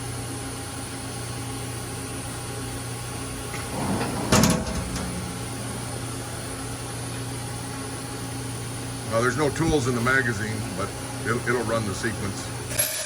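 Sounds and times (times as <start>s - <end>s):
machine hum: 2.4s - 12.8s
mechanical clunk and rattle: 3.5s - 6.9s.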